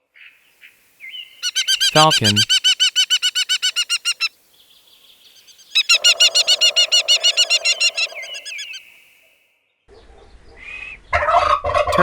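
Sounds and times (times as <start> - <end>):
falcon harsh kek calls: 1.4 - 4.4, 5.5 - 8.9.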